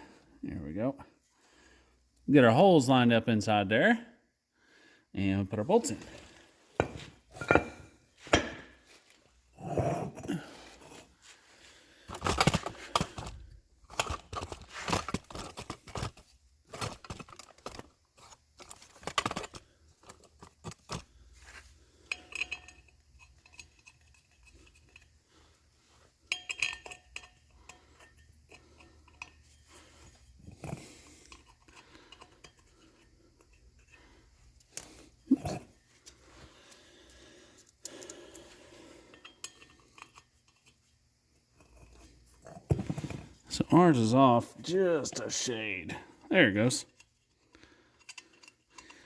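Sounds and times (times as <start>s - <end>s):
metal clinking and knocking: 6.7s - 8.9s, 22.0s - 25.2s, 26.2s - 33.9s, 39.1s - 40.8s.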